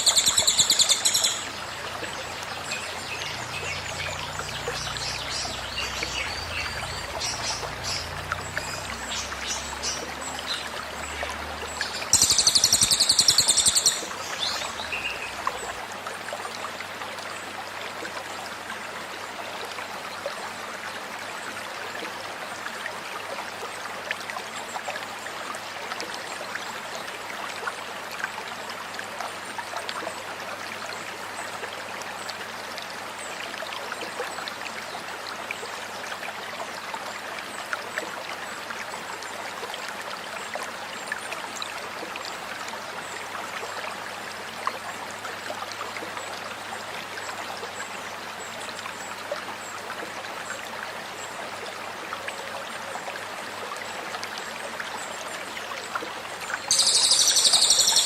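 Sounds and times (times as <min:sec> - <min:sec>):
high rapid songbird song: 0:00.0 - 0:10.8, 0:11.7 - 0:15.4, 0:56.6 - 0:58.0
stream water babbling: 0:00.0 - 0:58.0.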